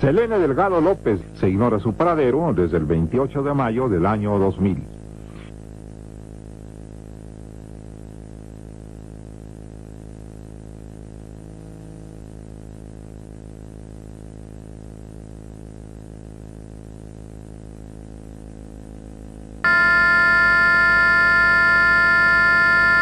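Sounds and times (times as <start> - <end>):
blaring alarm tone: 19.6 - 23.0
low electronic drone: 19.6 - 23.0.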